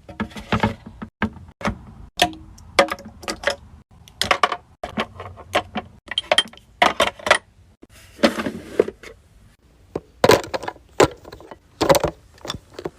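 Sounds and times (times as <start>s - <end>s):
bottles and jars clinking: 2.2s - 7.5s, 10.2s - 12.9s.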